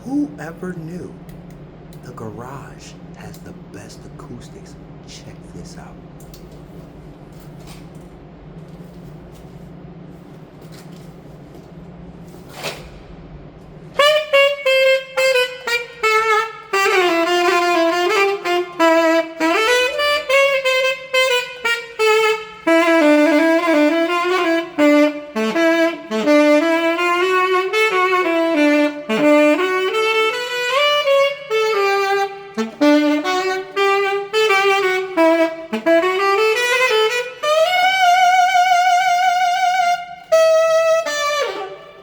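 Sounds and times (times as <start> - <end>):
saxophone melody: 13.8 - 42.0.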